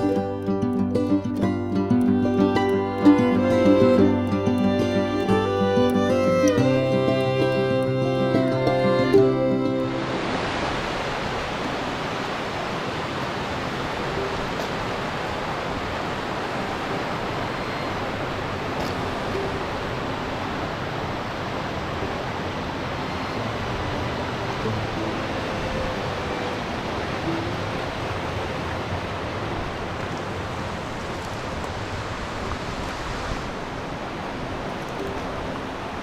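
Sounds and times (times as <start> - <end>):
creek water rushing: 0.0 - 36.0.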